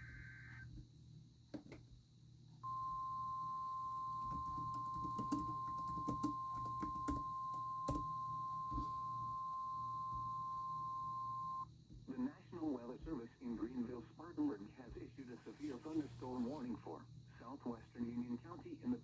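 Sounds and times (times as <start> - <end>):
steady high alarm beep: 2.6 - 11.7.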